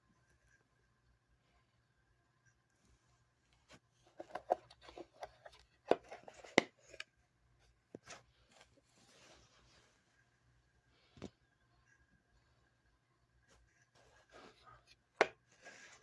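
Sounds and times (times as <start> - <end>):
soft rubbing: 7.6 - 11.1.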